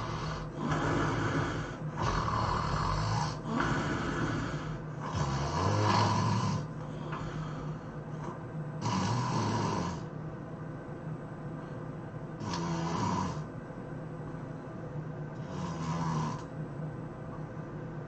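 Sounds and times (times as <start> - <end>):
person snoring loudly: 0.0 - 7.9, 8.8 - 10.1, 12.4 - 13.5, 15.4 - 16.5.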